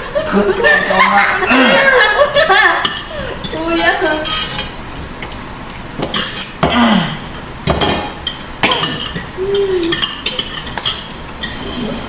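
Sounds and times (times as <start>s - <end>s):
cutlery clinking on plates: 2.8s - 6.8s, 7.7s - 11.9s.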